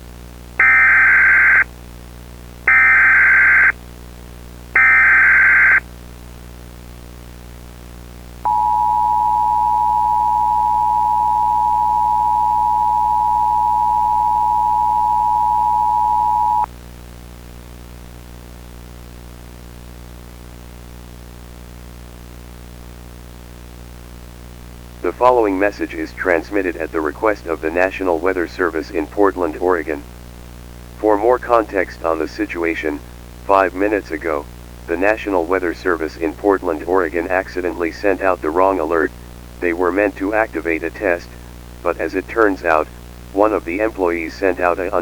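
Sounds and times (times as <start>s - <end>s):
alert data bursts: 0.6s - 1.6s, 2.7s - 3.7s, 4.8s - 5.8s, 8.5s - 16.7s
two-tone attention signal: 0.6s - 1.6s, 2.7s - 3.7s, 4.8s - 5.8s, 8.5s - 16.7s
constant low hum: 8.2s - 16.7s, 24.5s - 45.0s.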